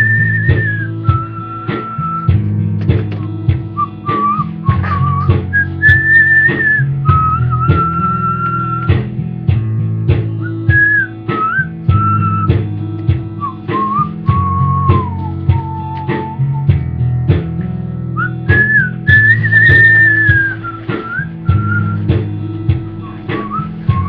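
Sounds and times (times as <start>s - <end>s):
person whistling a tune: 0.0s - 2.4s, 3.8s - 9.1s, 10.4s - 12.6s, 13.4s - 16.9s, 18.2s - 22.2s, 23.0s - 24.0s
guitar music with steady beat: 0.0s - 24.0s.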